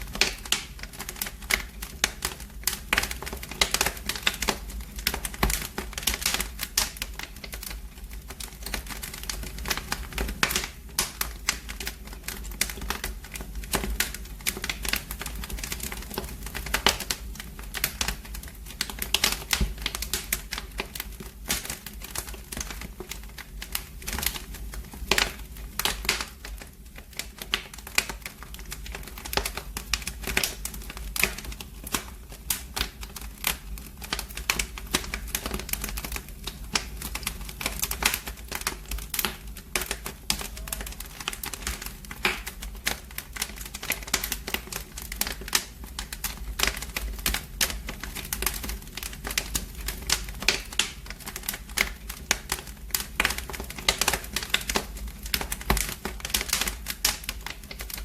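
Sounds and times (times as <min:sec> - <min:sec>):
low rumble of fire: 0:00.0 - 0:58.0
wood fire crackling: 0:00.0 - 0:58.0.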